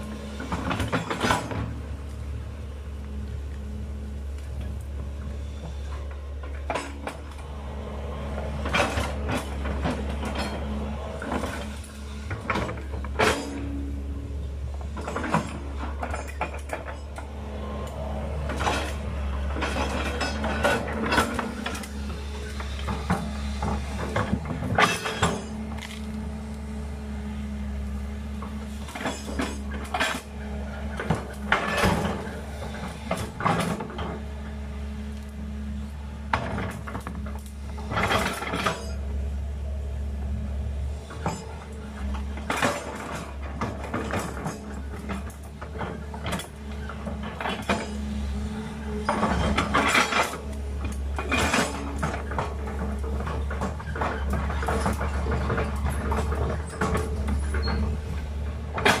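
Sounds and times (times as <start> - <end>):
excavator diesel engine running: 0.0 - 59.0
metallic clanks and rattles: 0.4 - 1.8, 5.8 - 7.5, 8.4 - 14.0, 14.7 - 26.1, 28.3 - 34.4, 36.3 - 39.1, 41.0 - 59.0.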